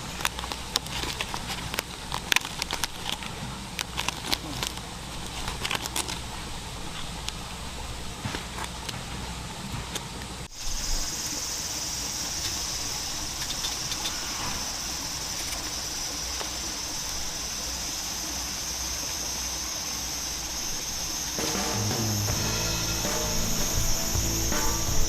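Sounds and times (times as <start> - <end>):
insects chirring: 10.4 - 25.0.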